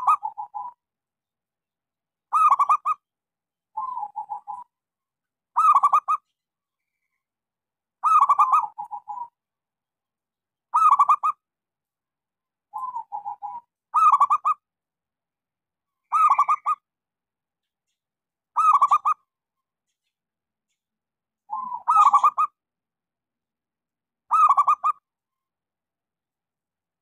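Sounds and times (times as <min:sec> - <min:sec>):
dove cooing: 0:00.0 - 0:00.8, 0:03.8 - 0:04.7, 0:08.0 - 0:09.4, 0:12.8 - 0:14.5, 0:21.5 - 0:22.5.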